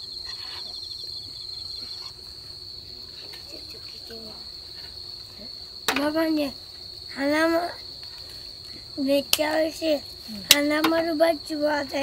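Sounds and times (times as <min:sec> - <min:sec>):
insects trilling steadily: 0:00.0 - 0:12.0
rapidly pulsing insect trill: 0:00.0 - 0:12.0.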